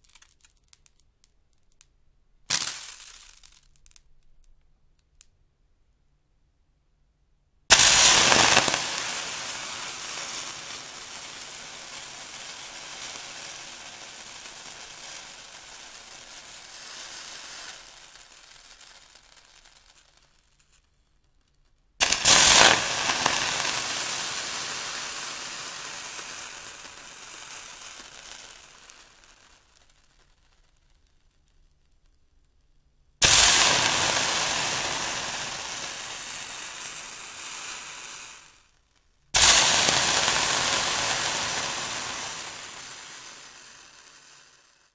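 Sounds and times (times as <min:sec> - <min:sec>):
water hissing into steam: 0:07.7 - 0:17.5, 0:22.0 - 0:28.2, 0:33.2 - 0:38.4, 0:39.4 - 0:44.0.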